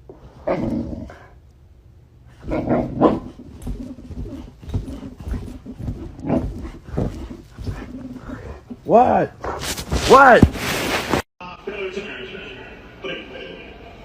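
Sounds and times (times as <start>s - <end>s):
dog vocalizing: 2.4s - 8.9s.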